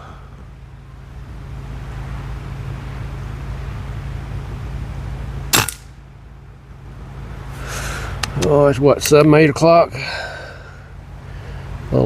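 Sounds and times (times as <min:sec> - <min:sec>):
sharp airgun shot: 0:05.5 - 0:06.0.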